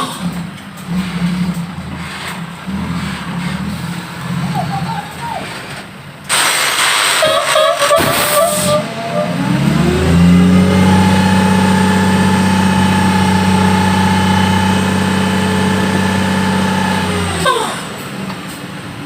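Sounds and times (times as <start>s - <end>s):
diesel truck engine revving: 0.0s - 19.0s.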